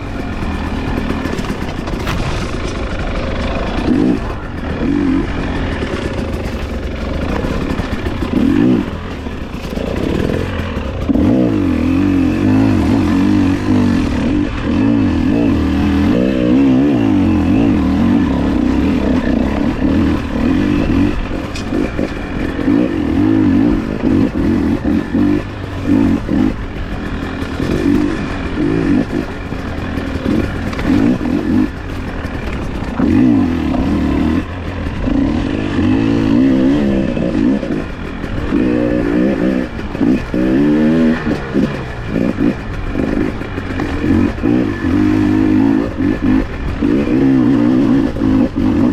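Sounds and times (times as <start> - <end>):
dirt bike engine revving: 0.0 - 48.9
bike clattering over ground: 0.9 - 4.3.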